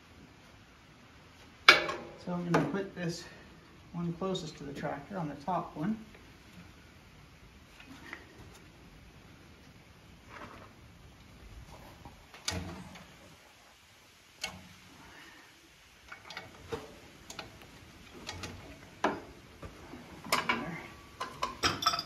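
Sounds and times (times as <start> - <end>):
metallic clicks of hose couplers: 16.1 - 18.9.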